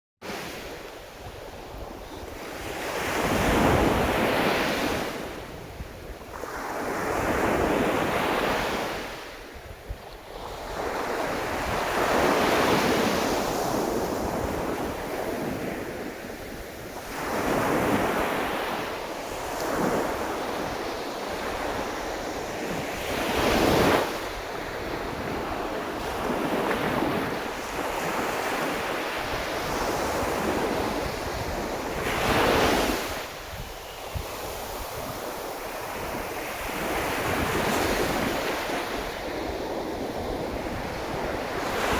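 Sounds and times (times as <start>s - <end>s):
waves breaking on shore: 10.3s - 41.9s.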